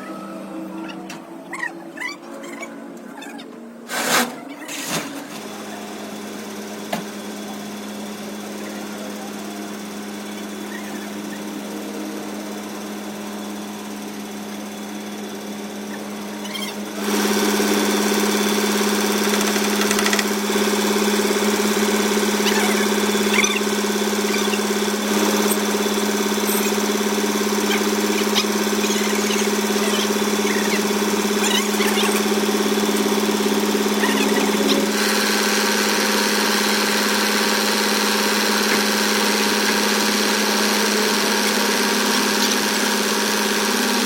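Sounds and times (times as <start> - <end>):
motor running steadily: 4.7 - 44.0.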